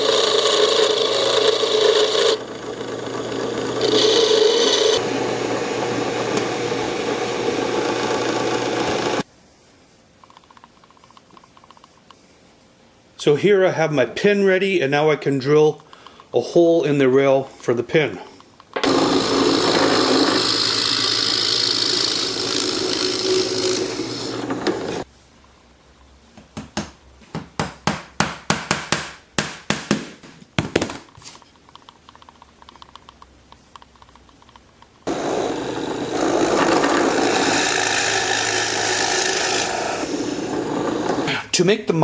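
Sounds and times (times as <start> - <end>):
drill press drilling wood: 0.0 - 9.2, 18.8 - 25.1, 35.1 - 41.4
power tool running: 0.0 - 9.2, 18.8 - 25.1, 35.1 - 41.3.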